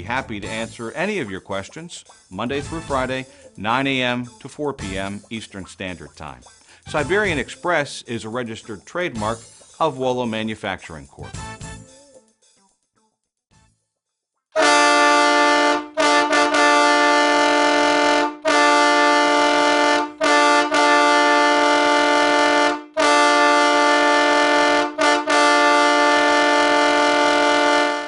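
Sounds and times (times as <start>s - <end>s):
train air horn chord: 14.6s - 28.0s.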